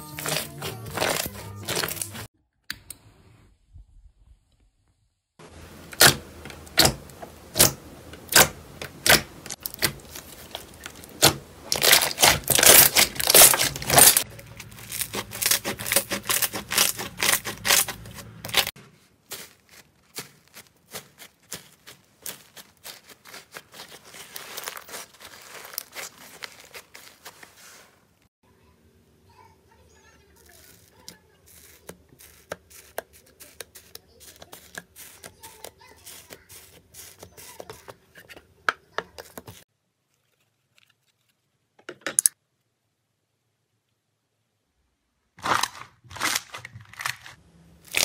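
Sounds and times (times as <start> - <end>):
slime popping and crackling: 8.3 - 18.7, 19.3 - 27.4.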